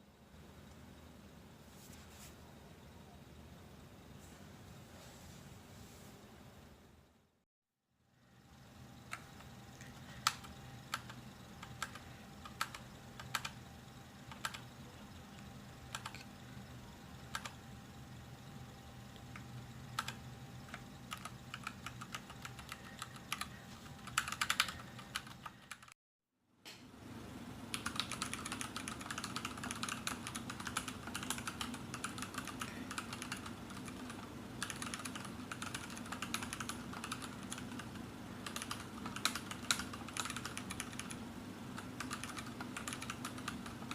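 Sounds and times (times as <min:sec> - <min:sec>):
mechanical keyboard typing: 0:10.2 - 0:13.6, 0:14.3 - 0:14.7, 0:15.3 - 0:16.3, 0:17.3 - 0:17.6, 0:19.3 - 0:25.9, 0:27.7 - 0:41.2, 0:41.8 - 0:43.9.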